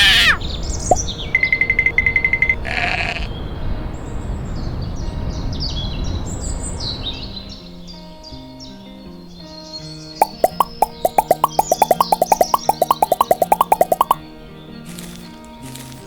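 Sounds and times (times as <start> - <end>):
sheep bleat: 2.6 - 3.3
high rapid trill: 10.2 - 14.2
small birds chirping: 10.2 - 14.2.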